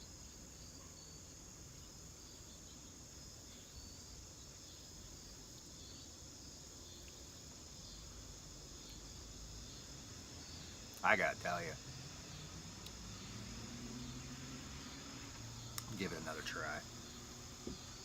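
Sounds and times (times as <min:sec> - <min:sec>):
crickets chirping: 0:00.0 - 0:18.0.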